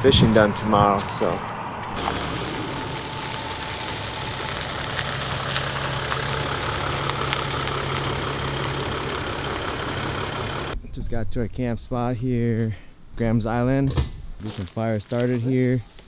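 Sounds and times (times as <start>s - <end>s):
vehicle engine droning: 2.0s - 10.8s.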